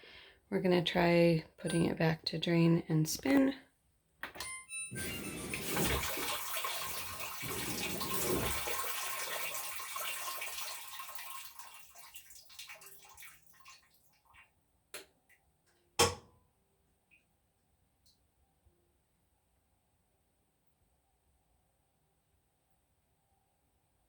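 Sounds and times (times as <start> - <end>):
washing machine water rushing: 5.0 - 13.9
washing machine clicks: 16.0 - 16.3.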